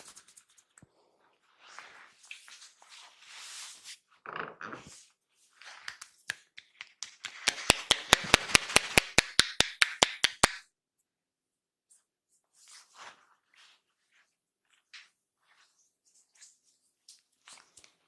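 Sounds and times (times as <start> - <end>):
hands rubbing over skin: 5.6 - 10.6
sharp slaps on skin: 5.9 - 10.6.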